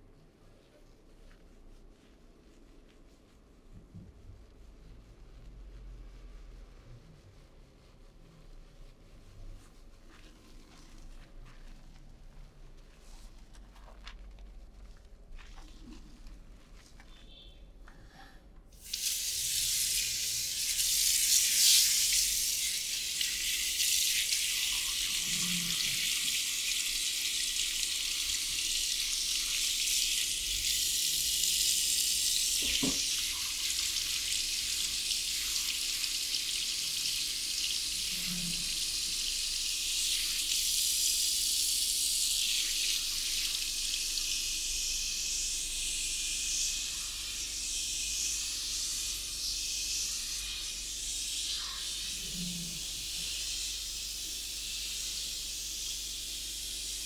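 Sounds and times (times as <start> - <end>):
tap water running into sink: 18.8 - 45.0.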